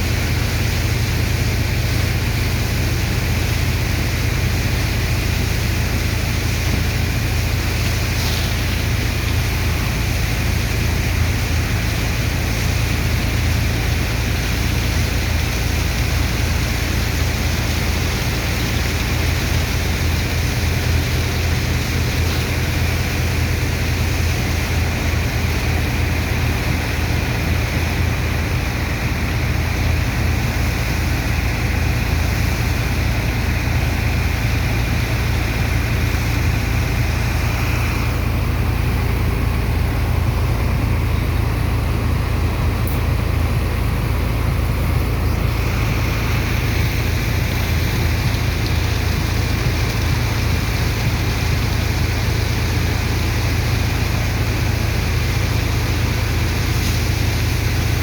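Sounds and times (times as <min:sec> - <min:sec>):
engines and pump droning: 0:00.0 - 0:58.0
rushing water hiss: 0:00.0 - 0:58.0.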